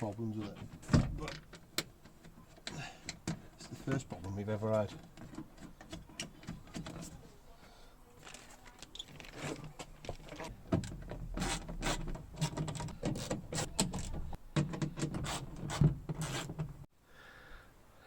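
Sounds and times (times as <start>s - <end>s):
tools clicking and knocking: 9.8s - 16.8s.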